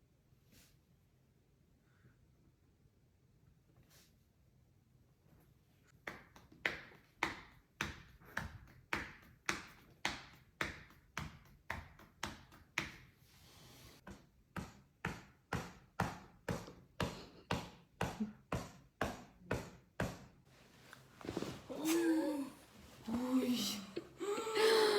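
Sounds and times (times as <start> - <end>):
percussive taps on a body: 6.0 - 13.1.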